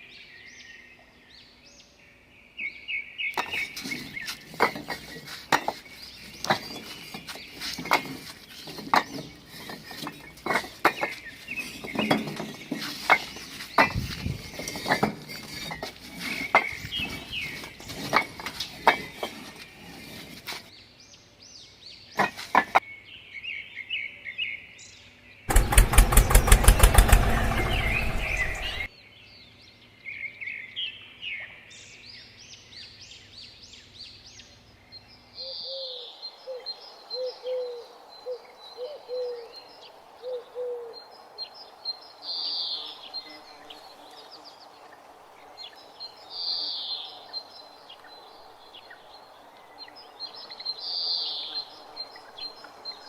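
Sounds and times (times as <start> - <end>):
small birds chirping: 2.6 - 22.8, 24.9 - 29.7, 31.9 - 53.0
rapidly pulsing mechanical burst: 25.5 - 28.9.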